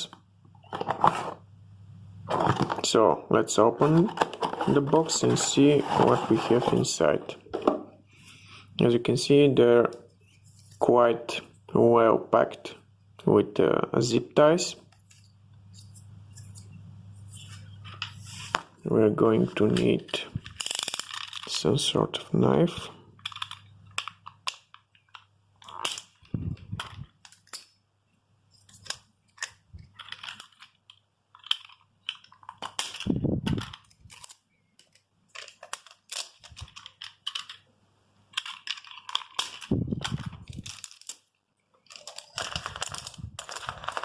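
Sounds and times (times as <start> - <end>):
packaging rustling: 3.8 - 6.9, 19.6 - 21.6, 28.6 - 37.6, 38.3 - 44.0.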